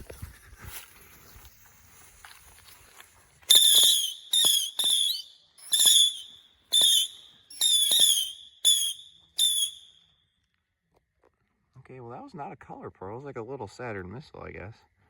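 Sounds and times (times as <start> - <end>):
whistling rockets firing: 3.5 - 10.0.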